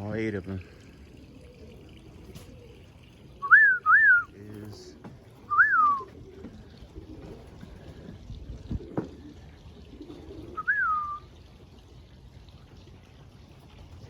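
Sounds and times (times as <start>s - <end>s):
person whistling: 3.4s - 4.3s, 5.5s - 6.0s, 10.6s - 11.2s.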